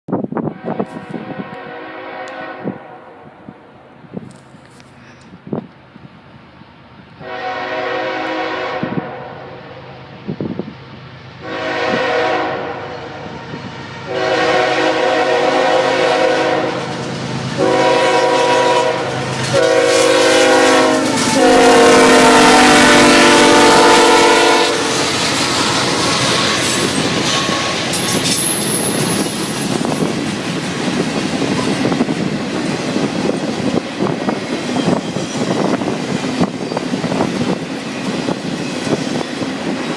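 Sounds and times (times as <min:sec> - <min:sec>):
train rumbling past: 0:00.2 - 0:39.9
train air horn blasts: 0:00.4 - 0:03.5, 0:07.2 - 0:10.1, 0:11.4 - 0:30.0.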